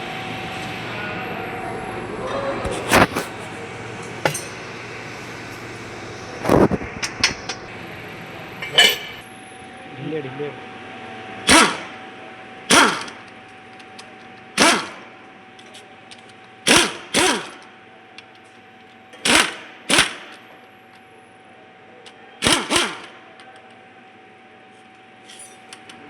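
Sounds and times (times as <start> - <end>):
hammer striking metal: 4.2 - 4.6, 8.6 - 9.2.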